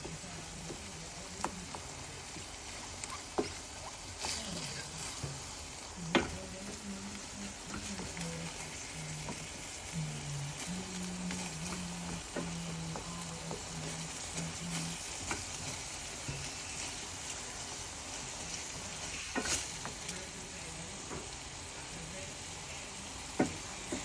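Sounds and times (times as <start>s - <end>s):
meat sizzling in a frying pan: 0.0s - 24.0s
utensil scraping and tapping pan: 19.0s - 20.0s.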